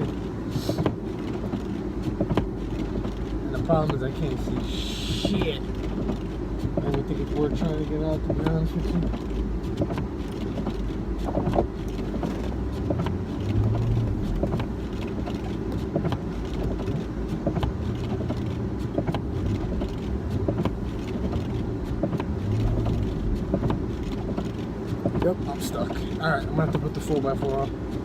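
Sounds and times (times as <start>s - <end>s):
truck engine revving: 13.0s - 14.6s, 21.4s - 24.4s.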